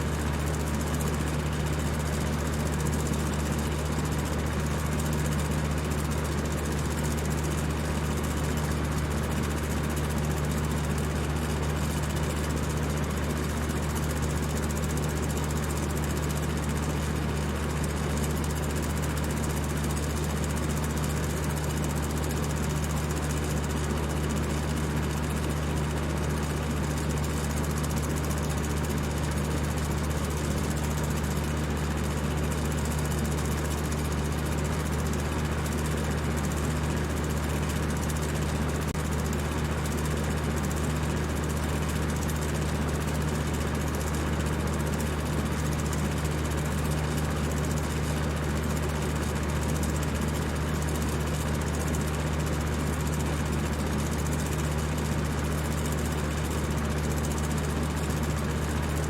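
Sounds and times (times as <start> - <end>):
electric fan whirring: 0.0 - 10.4.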